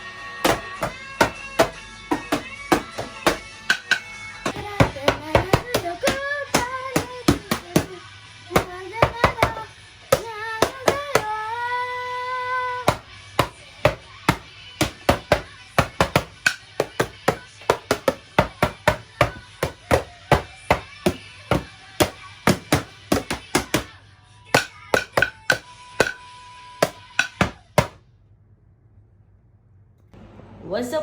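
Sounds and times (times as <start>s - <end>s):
music: 0.0s - 28.0s
hammer knocking: 0.4s - 8.0s, 8.6s - 11.3s, 12.9s - 23.9s, 24.6s - 26.2s, 26.8s - 28.0s.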